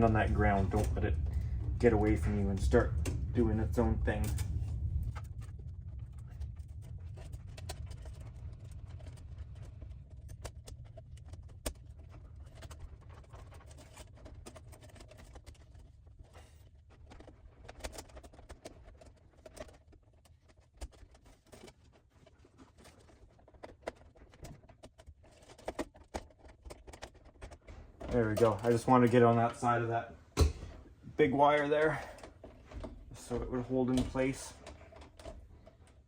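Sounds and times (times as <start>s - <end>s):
low steady rumble: 0.0s - 17.6s, 27.2s - 36.0s
wire clicking and scraping: 0.0s - 36.0s.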